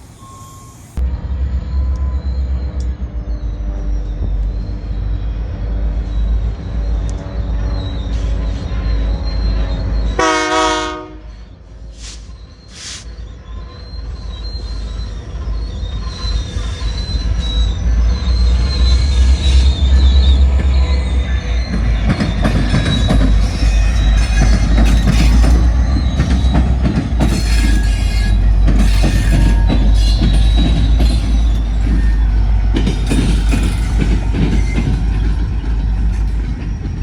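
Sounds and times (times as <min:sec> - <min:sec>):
loud low rumble: 0:01.0 - 0:07.7
horn blast: 0:10.2 - 0:11.3
short hisses: 0:12.0 - 0:13.1.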